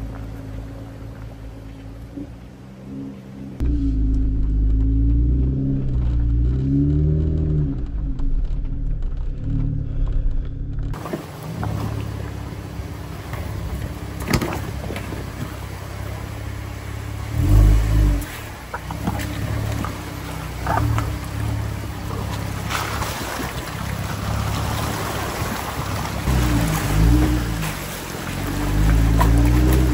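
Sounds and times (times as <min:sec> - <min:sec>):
engine rumble with knocks: 0:00.0 - 0:29.9
car engine revving: 0:02.0 - 0:29.9.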